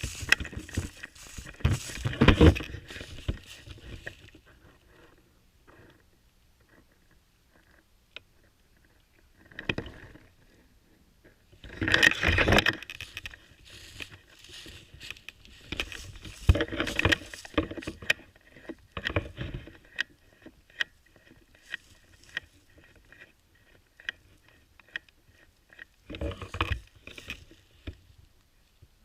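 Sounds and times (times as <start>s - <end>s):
scraping and rustling: 0.0s - 6.0s, 8.4s - 28.2s
sharp clicks and knocks: 11.2s - 28.0s.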